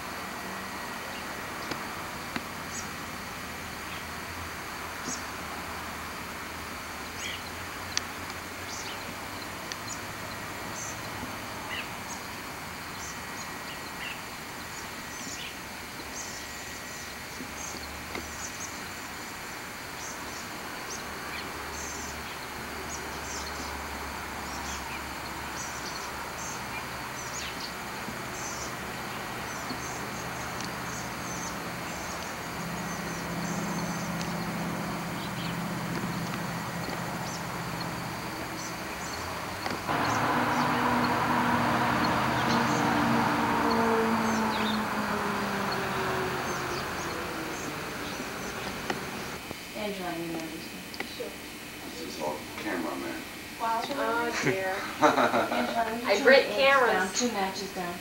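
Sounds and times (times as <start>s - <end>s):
small birds chirping: 5.0s - 5.3s, 7.0s - 49.4s
low steady hum: 20.0s - 52.6s.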